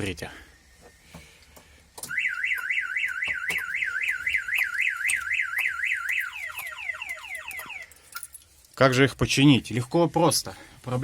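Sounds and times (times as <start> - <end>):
car alarm siren wailing: 2.1 - 8.1
falling alarm chirp: 2.1 - 8.1.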